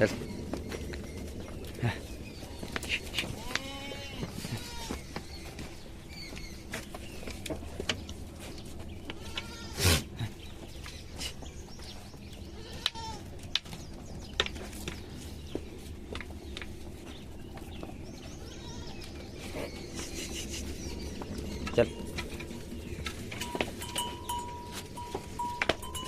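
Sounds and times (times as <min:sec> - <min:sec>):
goats bleating: 0:02.8 - 0:05.0, 0:09.0 - 0:10.5, 0:12.4 - 0:13.4, 0:18.4 - 0:19.4.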